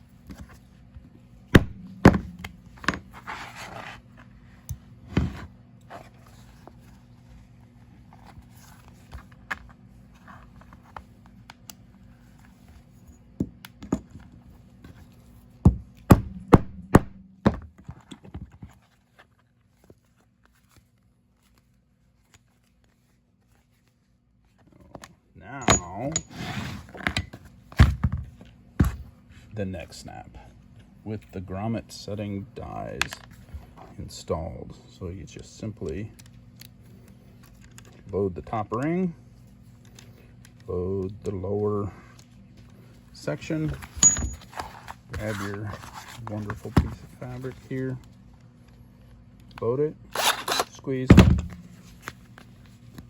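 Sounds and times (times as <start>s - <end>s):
hammer striking setting tool: 1.6s - 3.0s, 16.1s - 17.2s, 25.6s - 26.3s.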